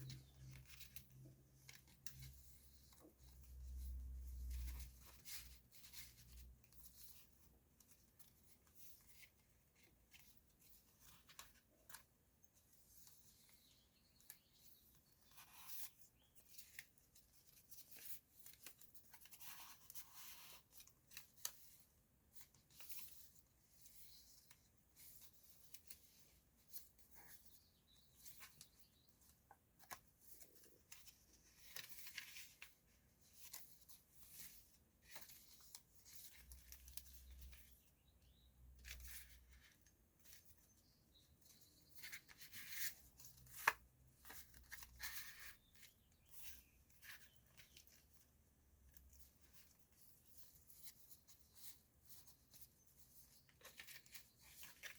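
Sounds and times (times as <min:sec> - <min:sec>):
paper pages rustling: 0:00.0 - 0:54.9.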